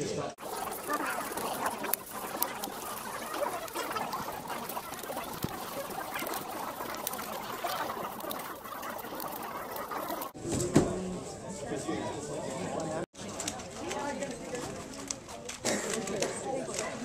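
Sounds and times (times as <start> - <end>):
crowd chatter in a hall: 10.4 - 17.0.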